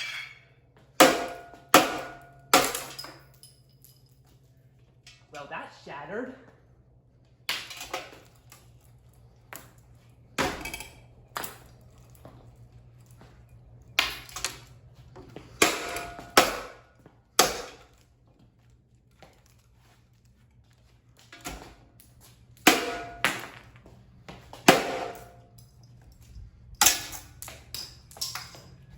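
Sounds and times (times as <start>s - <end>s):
metallic ring: 0.0s - 0.6s
parts cracking and clattering: 24.5s - 28.9s.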